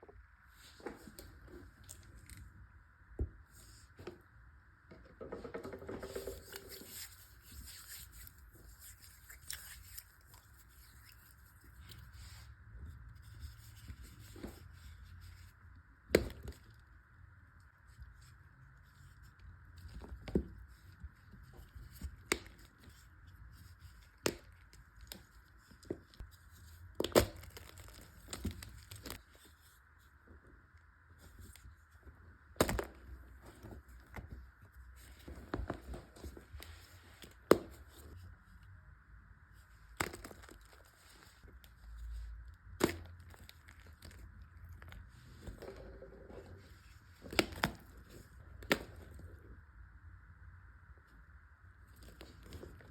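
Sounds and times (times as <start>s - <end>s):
chalk crumbling: 6.1s - 15.6s
chalk blocks cracking and snapping: 26.9s - 29.2s, 39.9s - 41.7s.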